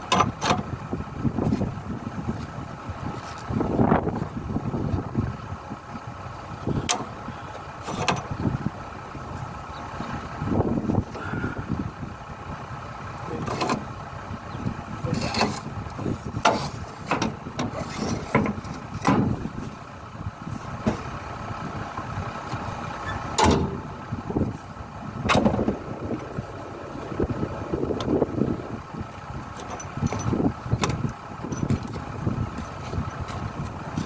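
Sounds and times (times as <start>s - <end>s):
metallic knocks and clanks: 0.0s - 0.7s, 7.8s - 8.4s, 13.4s - 13.9s, 16.4s - 19.7s, 22.5s - 24.0s, 25.2s - 26.3s, 29.5s - 34.0s
engine running: 0.0s - 34.0s.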